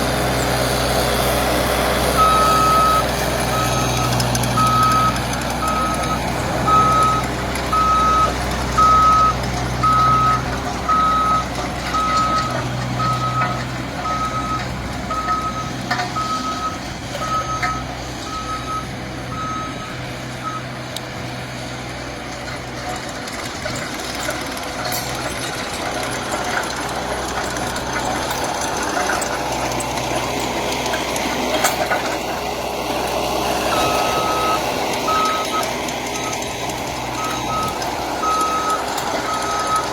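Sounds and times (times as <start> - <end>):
loader engine running: 0.0 - 39.9
reversing alarm beeping: 2.1 - 20.8, 33.7 - 39.9.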